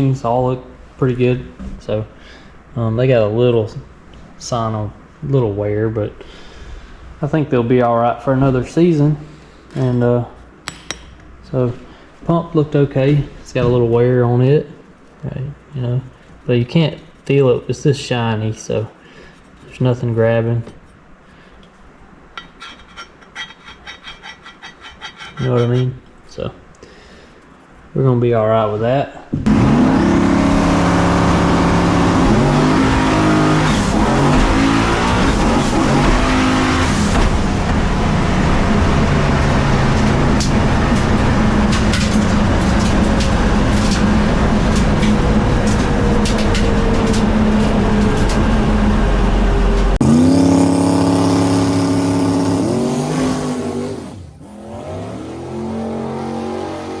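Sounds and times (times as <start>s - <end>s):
race car engine revving: 29.5s - 57.0s.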